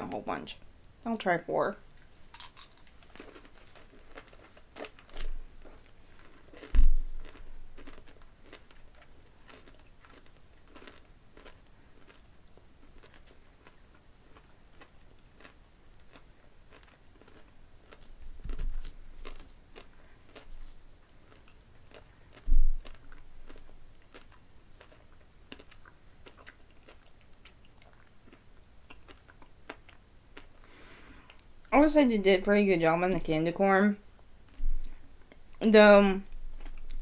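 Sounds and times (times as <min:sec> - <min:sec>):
candy being crunched and chewed: 0:01.9 - 0:30.6.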